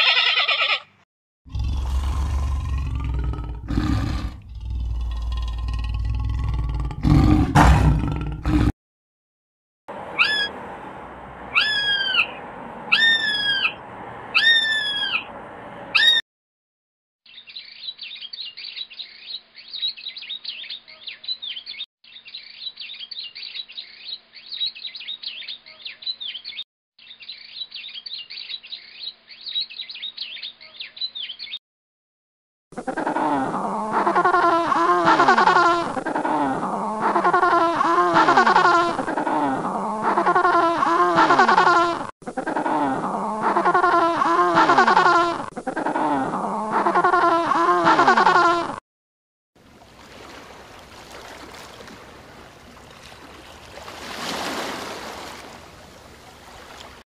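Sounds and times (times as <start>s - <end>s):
animal roaring: 1.5s - 8.7s
birds chirping and twittering: 11.5s - 13.8s, 17.3s - 31.6s.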